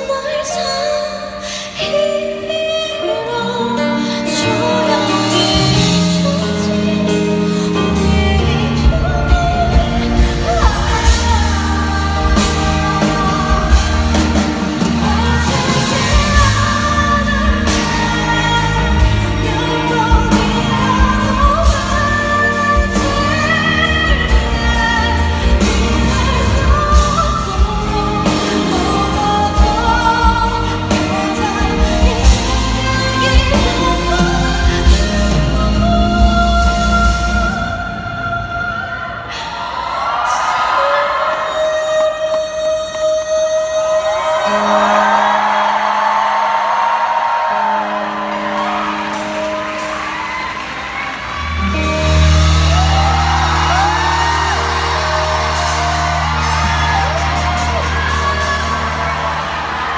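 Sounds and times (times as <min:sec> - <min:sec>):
live band playing: 0:00.0 - 0:40.2, 0:41.7 - 0:59.9
woman singing lead vocal: 0:00.0 - 0:49.9, 0:51.4 - 0:59.9
drums steady beat: 0:08.8 - 0:37.6, 0:48.6 - 0:59.9.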